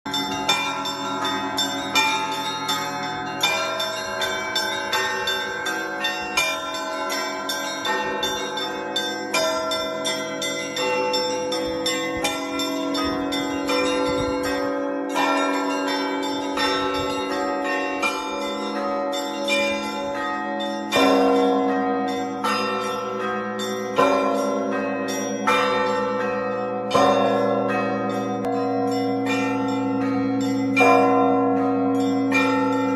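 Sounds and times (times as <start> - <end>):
church bells ringing: 0.1 - 32.9.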